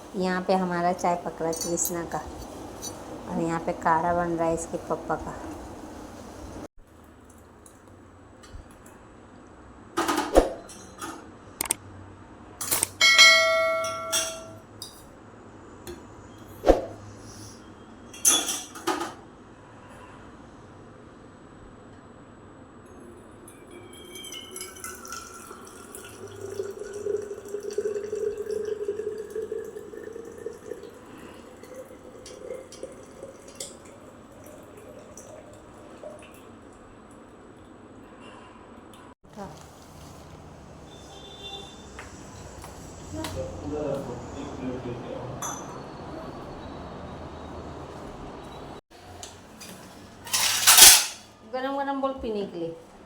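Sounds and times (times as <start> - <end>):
pot boiling on a gas stove: 0.0 - 8.8, 23.0 - 37.9
liquid pouring into a vessel: 23.7 - 36.8.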